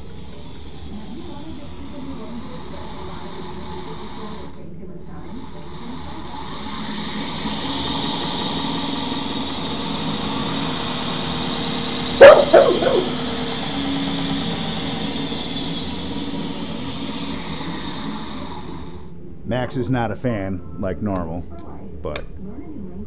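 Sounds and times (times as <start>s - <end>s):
belt grinder running: 5.2s - 12.1s, 13.5s - 19.1s
dog barking: 12.2s - 13.2s.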